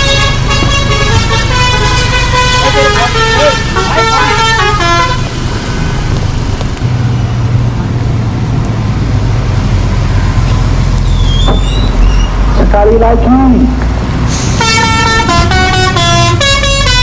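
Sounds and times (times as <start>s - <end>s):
bus musical horn: 0.0s - 6.1s, 14.3s - 17.0s
bus engine and road noise: 0.0s - 17.0s.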